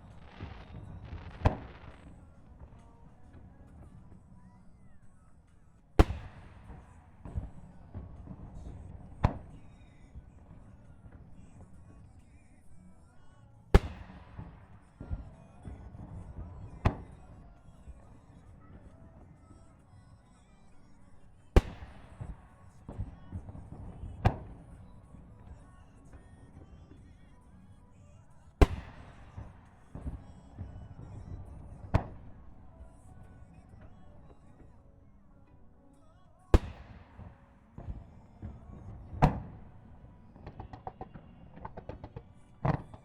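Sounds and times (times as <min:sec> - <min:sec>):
fireworks booming: 0:00.0 - 0:04.2, 0:06.0 - 0:12.0, 0:13.8 - 0:19.4, 0:21.6 - 0:27.1, 0:28.6 - 0:34.7, 0:36.5 - 0:43.0
smaller firework bangs: 0:00.0 - 0:05.2, 0:06.0 - 0:12.7, 0:13.7 - 0:19.8, 0:21.2 - 0:27.7, 0:28.6 - 0:34.8, 0:36.5 - 0:43.0.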